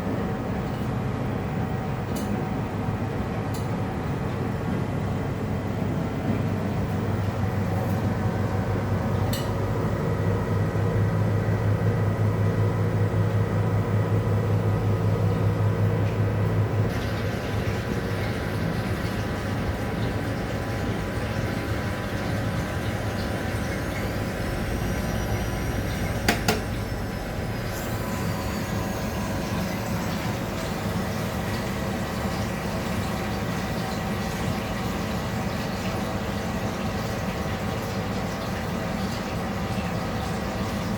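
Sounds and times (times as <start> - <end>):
washing machine motor hum: 0.0 - 40.9
faint rising whine: 24.1 - 30.0.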